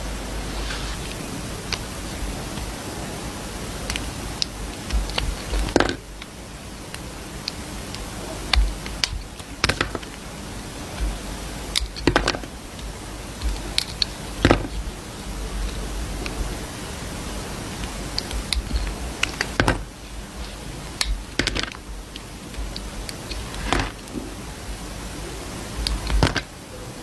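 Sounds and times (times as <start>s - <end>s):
steady hiss: 0.0s - 27.0s
dry soap cut crackling: 3.6s - 24.3s, 25.7s - 26.6s.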